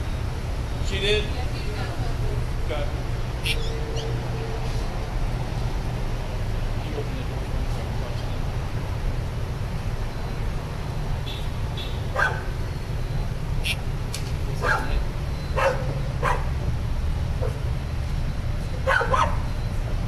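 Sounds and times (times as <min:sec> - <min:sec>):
dog barking: 0:12.1 - 0:12.5, 0:14.6 - 0:15.0, 0:15.6 - 0:16.5, 0:18.8 - 0:19.5.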